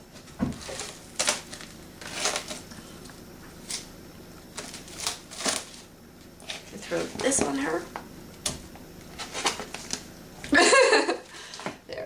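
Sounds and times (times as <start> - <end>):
plastic packaging crinkling: 0.5 - 7.4, 9.0 - 10.1.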